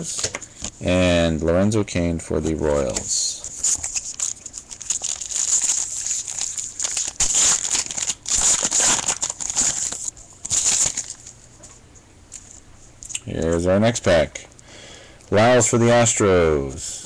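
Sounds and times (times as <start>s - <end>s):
foil wrapper crinkling: 2.7s - 11.6s.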